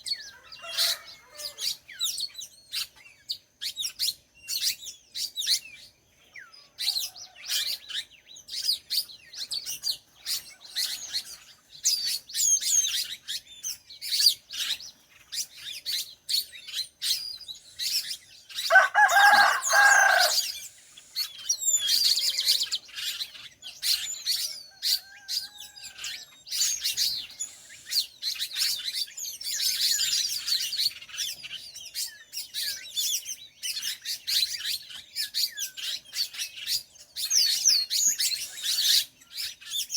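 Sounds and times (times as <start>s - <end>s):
small birds chirping and trilling: 0.0s - 39.9s
rooster crowing: 0.2s - 1.8s, 18.6s - 20.7s, 21.9s - 22.8s, 24.6s - 26.3s.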